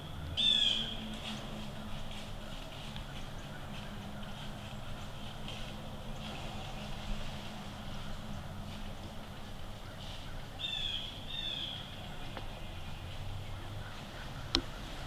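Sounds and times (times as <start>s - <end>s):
bird calling: 0.0s - 1.1s, 9.8s - 15.0s.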